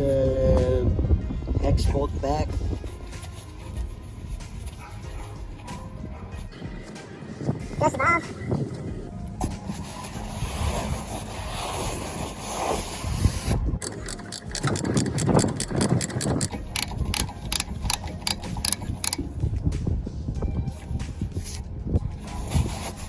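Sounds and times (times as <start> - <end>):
ratchet wrench clicking: 13.8 - 19.2
tool handling noise: 13.8 - 19.2.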